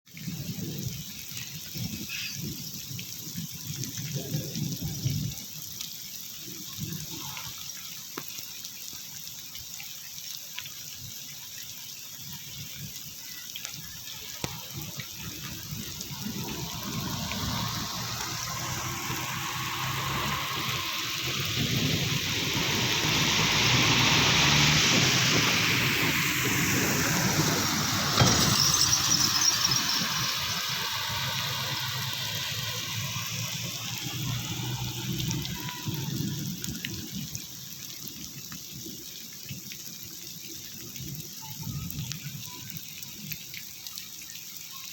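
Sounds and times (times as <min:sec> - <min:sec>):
rain: 0:00.0 - 0:44.9
water pouring: 0:00.1 - 0:44.9.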